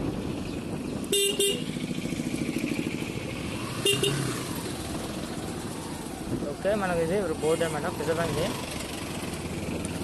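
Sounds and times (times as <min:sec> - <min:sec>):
motorcycle engine running: 0:00.0 - 0:10.0
horn toot: 0:01.1 - 0:01.8, 0:03.8 - 0:04.3.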